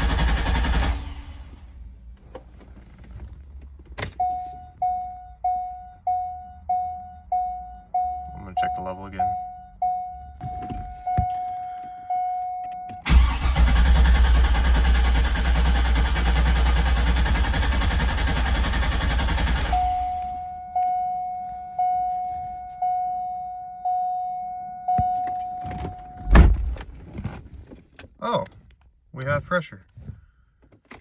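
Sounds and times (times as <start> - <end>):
car engine cranking on starter: 0.0 - 3.2, 13.0 - 20.6
car warning chime: 4.2 - 13.5, 19.6 - 26.3
brief thump: 26.3 - 26.9.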